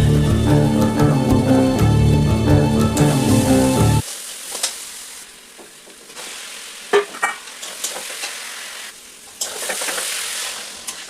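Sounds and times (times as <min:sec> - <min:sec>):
food sizzling in a pan: 0:03.1 - 0:11.0.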